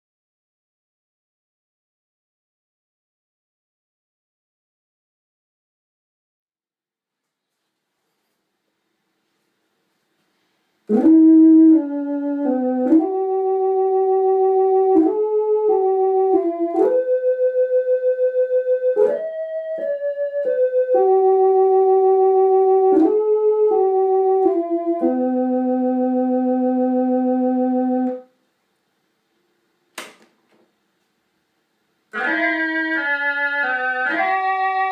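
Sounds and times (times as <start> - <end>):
electronic keyboard slow melody: 10.9 - 28.4, 32.1 - 34.9.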